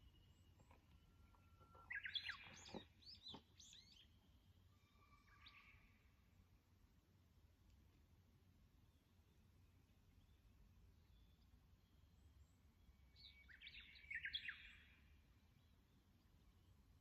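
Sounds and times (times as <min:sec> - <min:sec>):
bird chirping: 0:00.0 - 0:06.1, 0:10.1 - 0:16.9.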